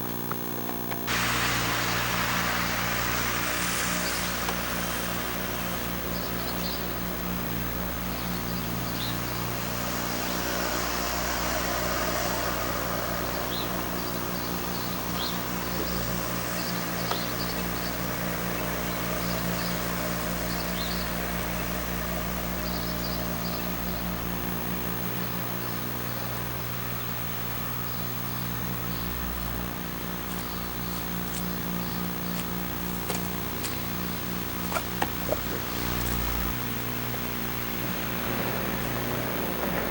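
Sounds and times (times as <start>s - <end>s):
electrical buzz: 0.0s - 39.9s
outdoor background hiss: 0.0s - 39.9s.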